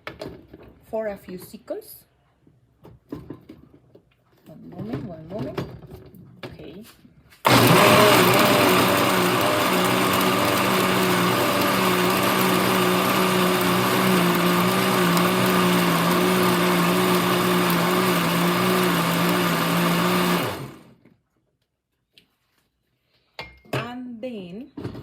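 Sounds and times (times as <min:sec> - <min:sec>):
blender running: 0:07.5 - 0:21.0.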